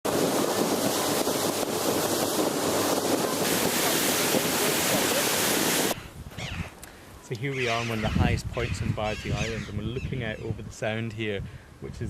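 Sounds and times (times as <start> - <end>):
wind: 0.0 - 12.0
sea surf: 0.1 - 6.0
wind buffeting microphone: 0.1 - 6.8, 7.6 - 12.0.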